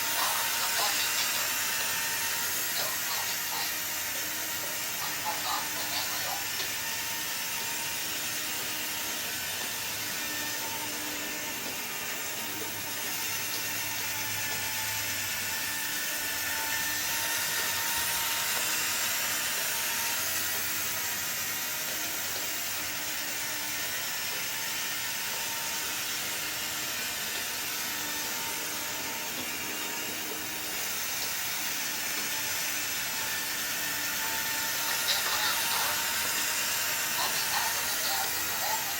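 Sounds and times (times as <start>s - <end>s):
toy monorail motor whirring: 0.0s - 38.9s.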